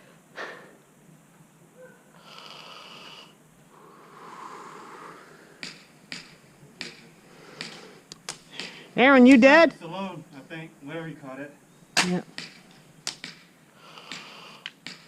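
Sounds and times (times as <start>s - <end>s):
faint breathing: 0.0s - 0.8s, 2.1s - 6.0s, 7.0s - 9.0s, 13.7s - 14.8s.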